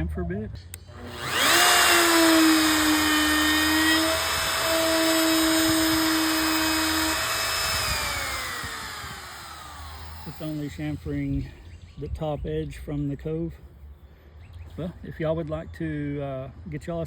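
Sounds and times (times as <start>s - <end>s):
wood router whining: 0.8s - 11.2s.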